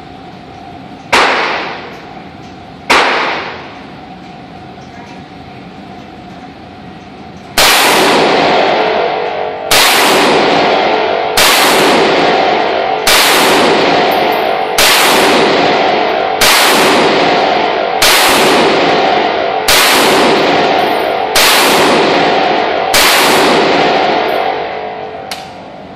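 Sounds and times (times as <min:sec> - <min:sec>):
heavy ringing chords: 0:06.2 - 0:25.9.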